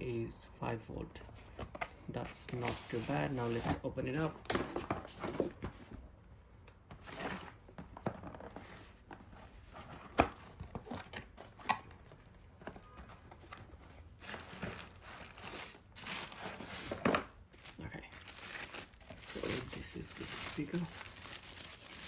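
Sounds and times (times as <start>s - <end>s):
packaging crinkling and tearing: 13.5s - 22.0s.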